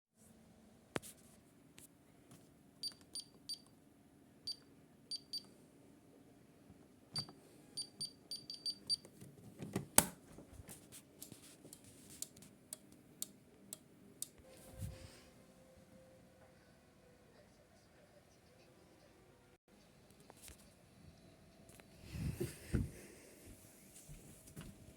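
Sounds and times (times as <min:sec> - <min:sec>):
keypad beeps: 0:02.8 - 0:03.7, 0:04.5 - 0:05.5, 0:07.2 - 0:09.0.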